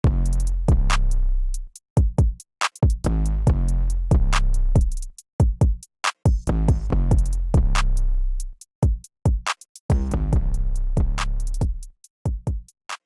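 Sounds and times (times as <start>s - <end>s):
electronic music with drum-machine beats: 8.9s - 12.7s.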